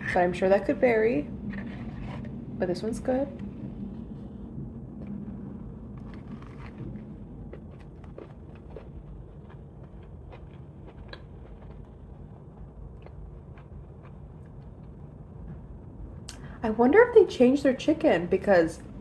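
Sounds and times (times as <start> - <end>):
low steady hum: 0.0 - 19.0
chewing crunches: 6.0 - 15.0.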